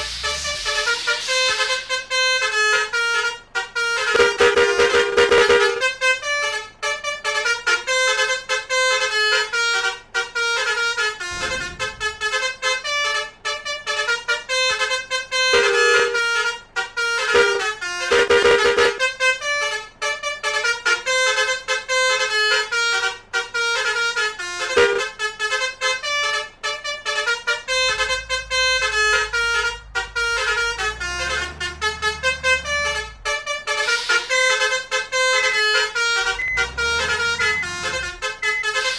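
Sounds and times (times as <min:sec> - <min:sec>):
low rumble: 0:00.0 - 0:02.5, 0:11.2 - 0:12.7, 0:27.7 - 0:34.9, 0:36.0 - 0:38.6
musical horns playing trumpet notes: 0:00.0 - 0:38.9.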